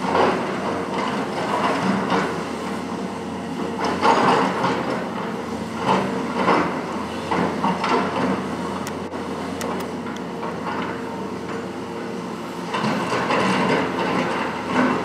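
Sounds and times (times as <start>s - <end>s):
excavator clanking and scraping: 0.0s - 15.0s
excavator diesel engine running: 0.0s - 15.0s.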